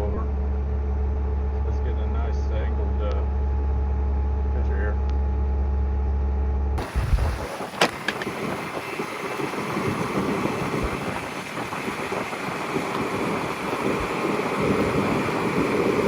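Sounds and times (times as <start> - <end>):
diesel engine running: 0.0 - 16.0
wind noise on microphone: 6.8 - 16.0.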